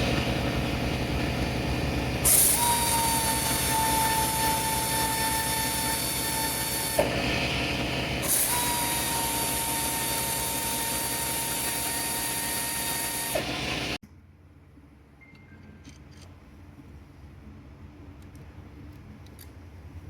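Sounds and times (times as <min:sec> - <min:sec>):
machine motor whining and hissing: 0:02.2 - 0:14.0.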